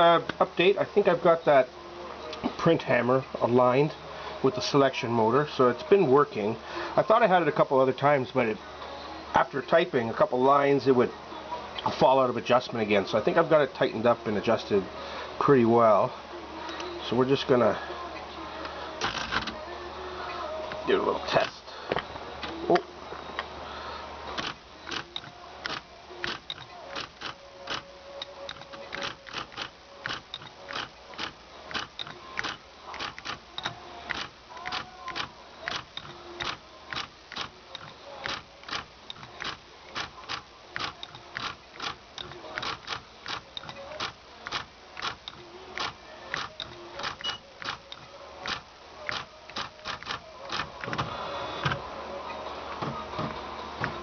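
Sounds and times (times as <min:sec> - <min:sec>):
typewriter motor whirring: 0:19.0 - 0:19.6, 0:24.4 - 0:27.9, 0:28.5 - 0:51.8
typewriter print hammer strikes: 0:38.3 - 0:45.2.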